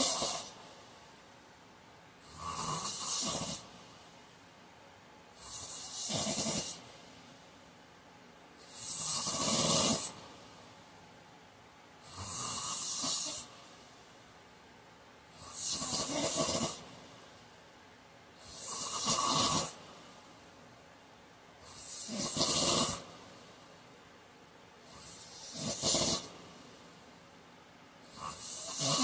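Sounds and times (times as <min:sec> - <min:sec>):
man snoring loudly: 0:00.0 - 0:00.6, 0:02.2 - 0:03.7, 0:05.4 - 0:06.9, 0:08.6 - 0:10.2, 0:12.0 - 0:13.5, 0:15.4 - 0:16.9, 0:18.4 - 0:19.8, 0:21.7 - 0:23.1, 0:24.9 - 0:26.4, 0:28.1 - 0:29.0
quiet breathing: 0:00.0 - 0:29.0.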